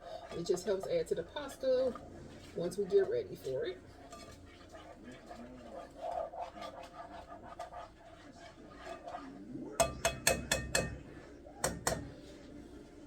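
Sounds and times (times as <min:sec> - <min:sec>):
metal utensil scraping a pot: 0:00.0 - 0:11.1.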